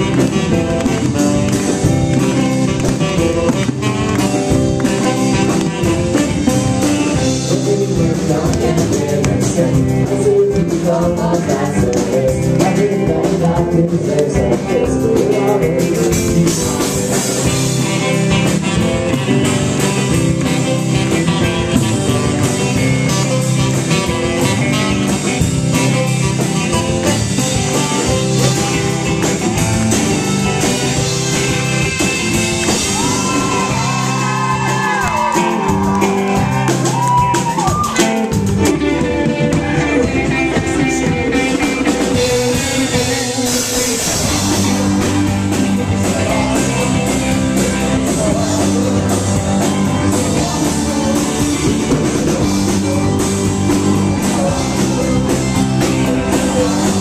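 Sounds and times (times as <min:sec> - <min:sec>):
person singing: 0:00.0 - 0:18.9, 0:32.7 - 0:57.0
live rock band playing: 0:00.0 - 0:57.0
steady drum beat: 0:00.0 - 0:57.0.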